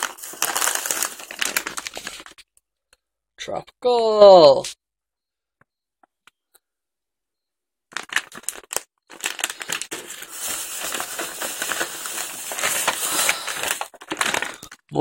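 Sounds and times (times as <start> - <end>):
snack packaging crinkling: 0.0 - 2.4, 7.9 - 14.9.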